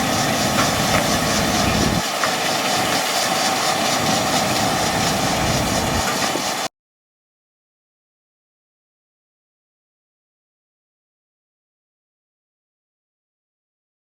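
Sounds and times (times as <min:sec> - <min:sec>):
tractor diesel engine rumble: 0:00.0 - 0:06.6.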